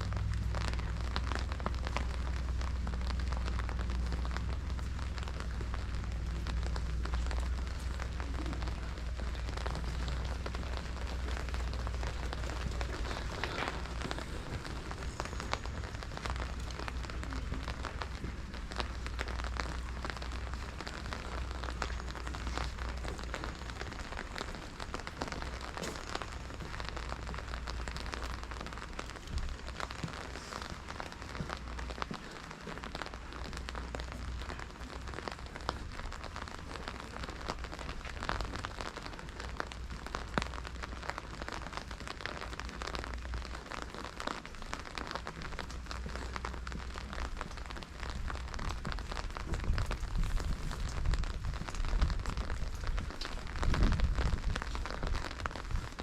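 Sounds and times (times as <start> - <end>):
low rumble: 0.0 - 56.0
steady rain falling: 0.0 - 56.0.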